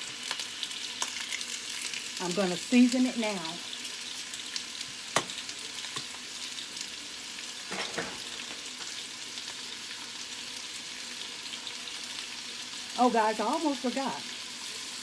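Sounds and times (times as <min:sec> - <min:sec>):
food sizzling in hot oil: 0:00.0 - 0:15.0.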